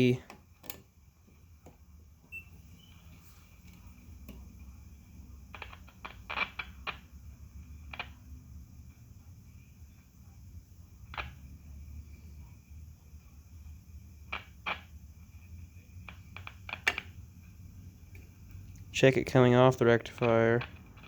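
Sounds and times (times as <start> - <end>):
low steady hum: 0.0 - 6.2
test probes clicking on metal chassis: 0.2 - 1.8, 16.0 - 17.2.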